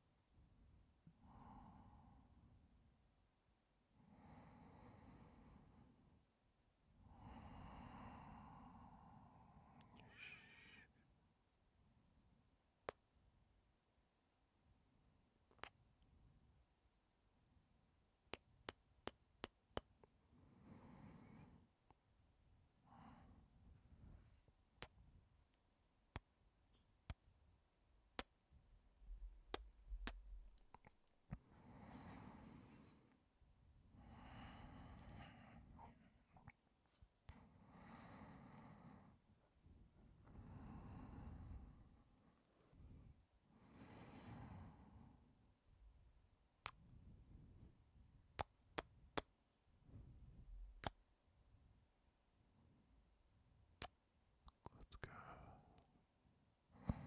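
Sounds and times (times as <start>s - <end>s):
soft breaths: 4.0s - 6.1s, 7.0s - 11.1s, 20.3s - 27.2s, 28.2s - 45.4s, 54.8s - 56.1s, 56.7s - 57.0s
lip smacks close to microphone: 29.2s - 31.0s.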